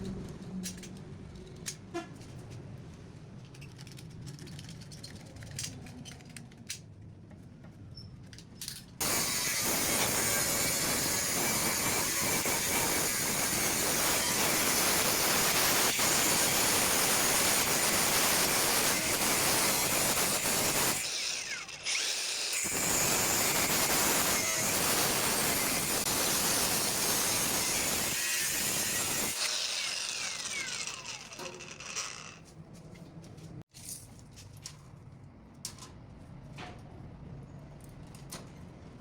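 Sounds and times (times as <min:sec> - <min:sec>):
power tool grinding: 0:09.0 - 0:32.5.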